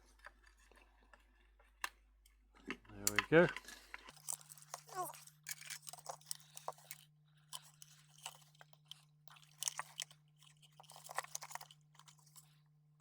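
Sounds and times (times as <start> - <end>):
plastic casing clicks and crackles: 2.7 - 12.5.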